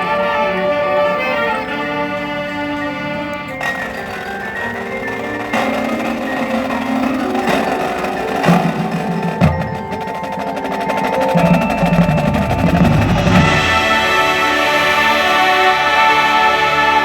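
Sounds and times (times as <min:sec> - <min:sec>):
low drum roll: 0:03.6 - 0:15.3.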